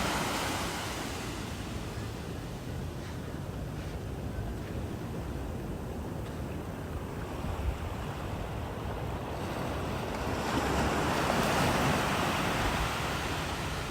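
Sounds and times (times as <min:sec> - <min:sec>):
ocean surf breaking: 0:00.0 - 0:04.9, 0:08.0 - 0:13.9
wind buffeting microphone: 0:00.0 - 0:13.9.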